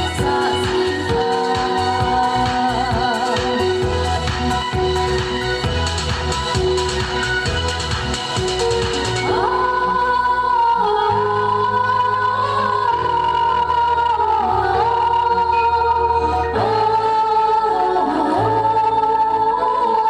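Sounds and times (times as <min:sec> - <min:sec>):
person singing: 0:00.0 - 0:07.4
steady bass line: 0:00.0 - 0:19.0.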